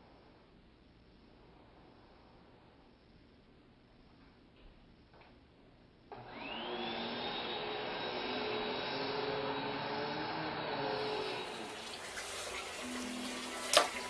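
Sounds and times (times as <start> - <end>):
appliance motor whine: 6.1 - 14.0.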